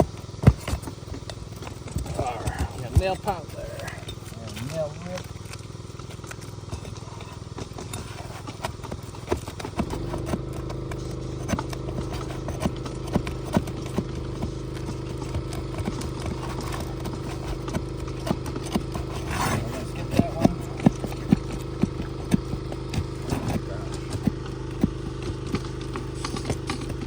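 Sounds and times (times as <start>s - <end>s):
engine hum: 0.0s - 27.0s.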